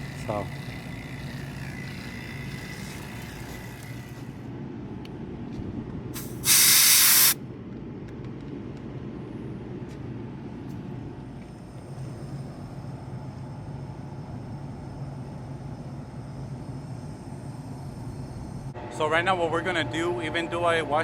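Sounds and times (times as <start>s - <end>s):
low machine hum: 0.0s - 6.4s, 7.4s - 21.0s
refrigerant hissing from hose: 6.2s - 7.4s.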